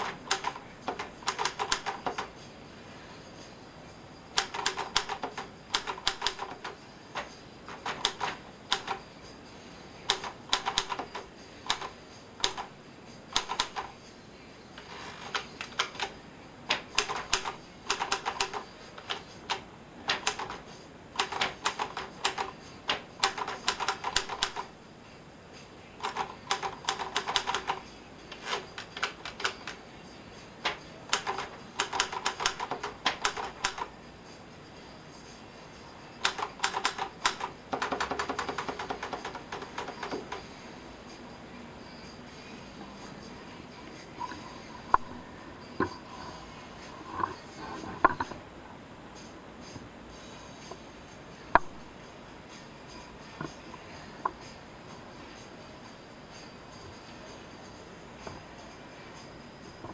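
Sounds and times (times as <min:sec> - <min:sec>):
typewriter key strikes: 0:00.0 - 0:02.3, 0:04.4 - 0:09.0, 0:10.1 - 0:12.7, 0:13.4 - 0:13.9, 0:15.4 - 0:20.6, 0:21.2 - 0:24.7, 0:26.0 - 0:27.8, 0:30.7 - 0:33.9, 0:36.2 - 0:40.4.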